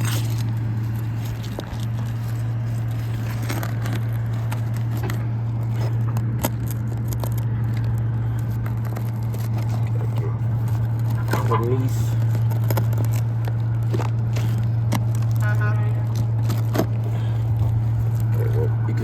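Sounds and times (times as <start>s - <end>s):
shingle snapping: 0.0s - 15.5s
pry bar scraping under shingles: 0.0s - 18.4s
low machine hum: 0.0s - 19.0s
shingles cracking: 0.0s - 19.0s.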